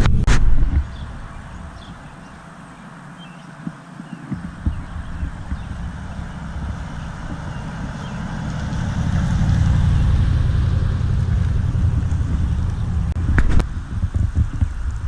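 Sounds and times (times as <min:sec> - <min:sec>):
vehicle engine driving past: 0:04.4 - 0:13.6.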